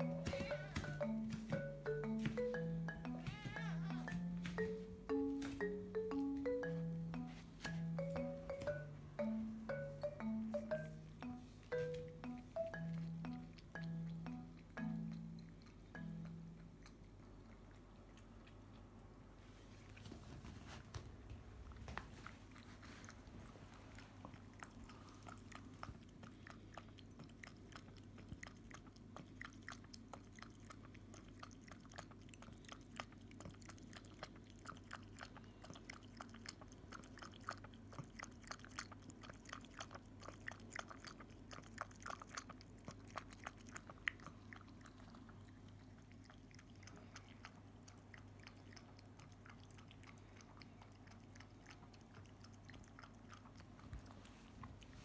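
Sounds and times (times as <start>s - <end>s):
kitten lapping milk: 13.4s - 20.4s, 21.1s - 55.0s.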